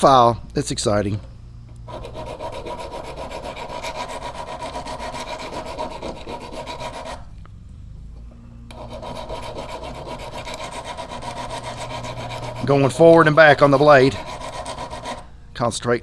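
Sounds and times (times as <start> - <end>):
hand file rasping on steel: 1.9 - 7.3, 8.7 - 15.2.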